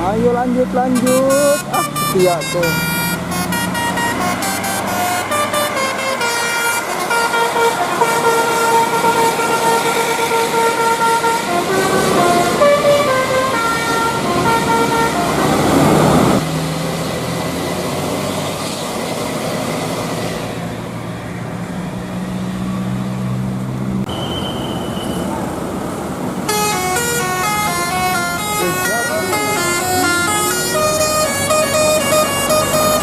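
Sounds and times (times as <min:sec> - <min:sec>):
bus horn playing a tune: 0:00.7 - 0:16.4, 0:26.4 - 0:33.0
high tone: 0:00.8 - 0:15.6, 0:26.5 - 0:33.0.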